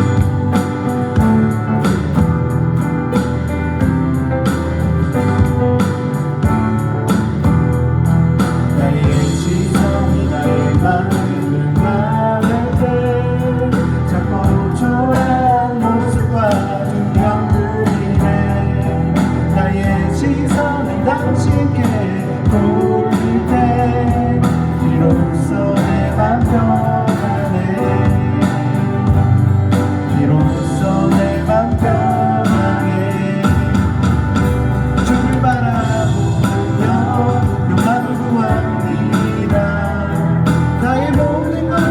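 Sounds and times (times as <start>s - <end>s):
live band playing worship song: 0.0s - 41.9s
person singing melody: 8.6s - 41.9s.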